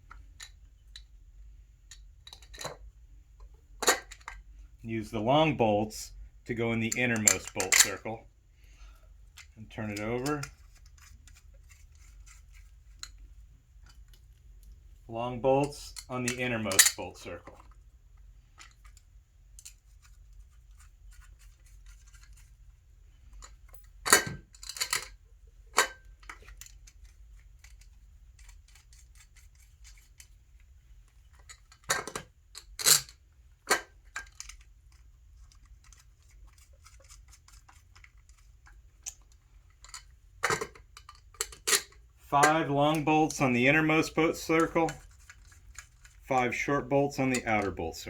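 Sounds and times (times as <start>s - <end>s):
bolts clinking and knocking: 1.9s - 2.8s, 3.4s - 4.4s, 6.8s - 8.1s, 15.6s - 17.8s, 23.3s - 28.5s, 31.3s - 34.6s, 39.0s - 46.2s, 47.2s - 47.8s.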